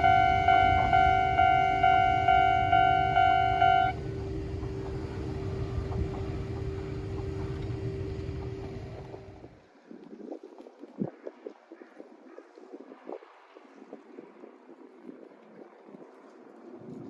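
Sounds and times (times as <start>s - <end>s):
railway crossing warning bell: 0.0s - 4.0s
train rumble: 0.0s - 9.6s.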